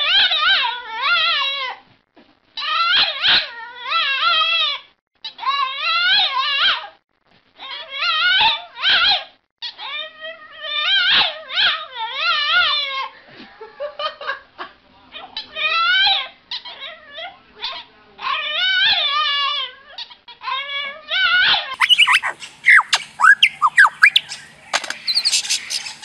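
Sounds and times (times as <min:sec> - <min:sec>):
dog whining and howling: 0:02.6 - 0:04.7, 0:09.8 - 0:12.9
dog yipping: 0:02.6 - 0:04.7, 0:07.6 - 0:12.8, 0:17.6 - 0:26.0.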